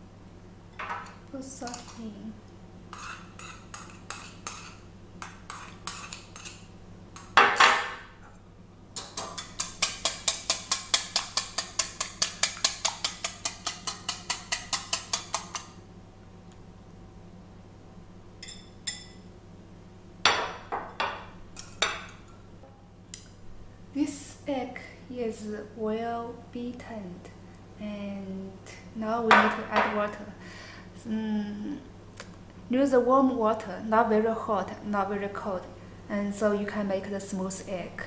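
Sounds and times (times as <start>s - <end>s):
eggs being beaten in a bowl: 3.0s - 6.6s, 9.0s - 15.7s
utensil clicking against bowl: 9.0s - 15.7s.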